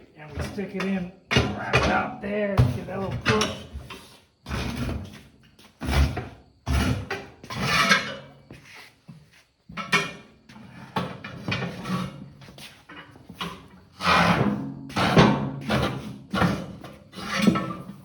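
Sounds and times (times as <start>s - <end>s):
tire lever scraping metal rim: 5.8s - 8.3s, 10.8s - 18.0s.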